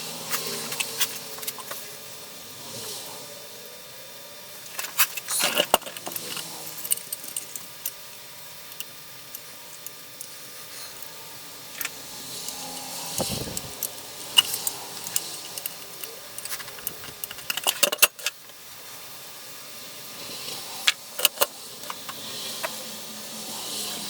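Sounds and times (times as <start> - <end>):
metal parts and tools clinking: 4.7 - 8.0, 8.7 - 18.6.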